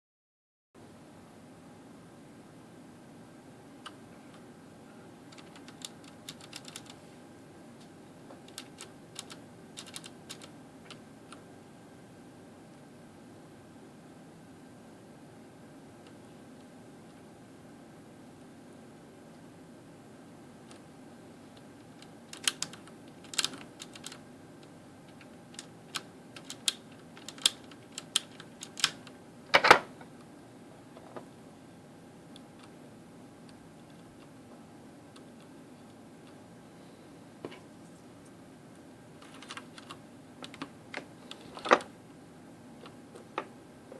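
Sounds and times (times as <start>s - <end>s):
mechanical keyboard key clicks: 5.3s - 6.9s, 8.5s - 11.0s
mechanical keyboard clicks: 5.3s - 7.0s, 8.5s - 11.4s, 22.0s - 24.2s, 25.1s - 29.1s.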